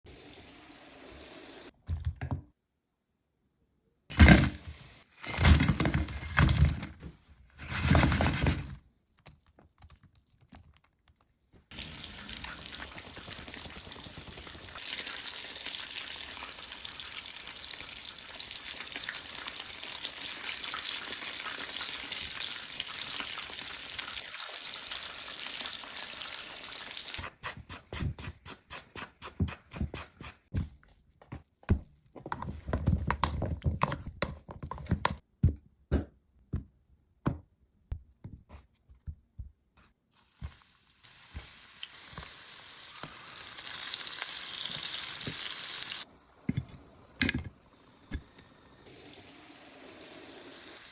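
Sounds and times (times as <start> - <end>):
meat frying in hot oil: 11.7 - 27.2, 40.1 - 46.1, 47.6 - 50.9.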